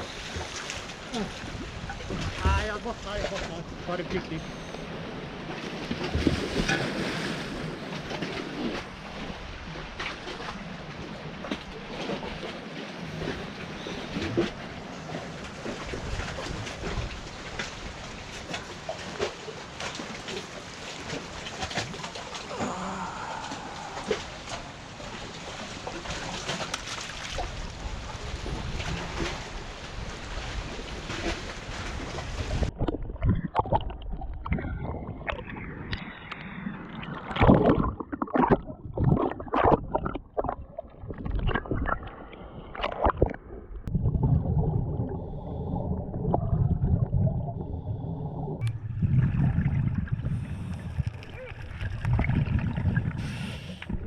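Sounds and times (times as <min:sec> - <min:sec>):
water splashing and gurgling: 0:00.0 - 0:54.0
wind noise: 0:27.4 - 0:54.0
low hum: 0:32.6 - 0:54.0.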